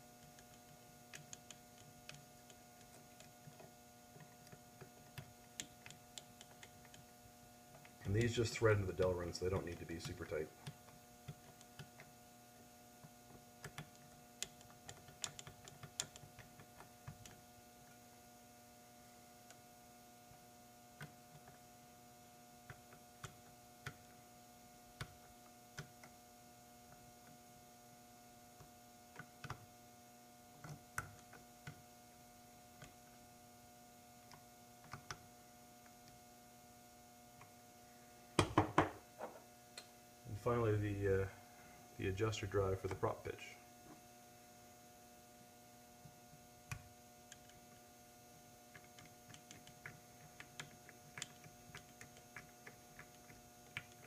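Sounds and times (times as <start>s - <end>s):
electrical hum: 0.0s - 54.0s
small tools clicking and tapping: 13.6s - 17.4s.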